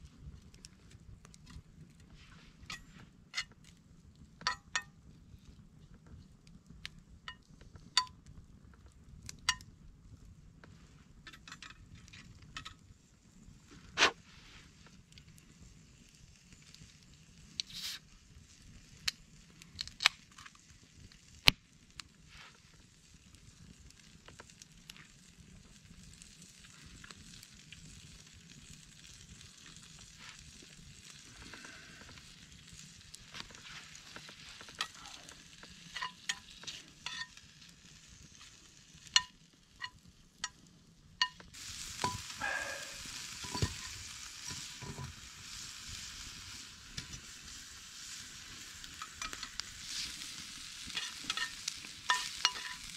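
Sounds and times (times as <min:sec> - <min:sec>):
food sizzling in a pan: 0:15.6 - 0:19.1, 0:24.2 - 0:40.6, 0:41.2 - 0:52.9.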